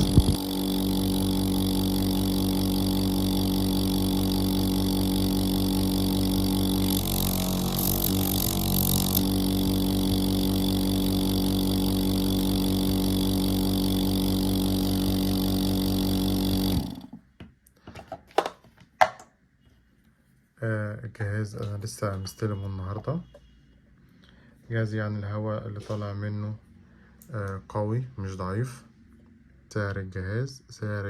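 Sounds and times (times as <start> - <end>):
nebulizer buzzing hum: 0.0 - 17.2.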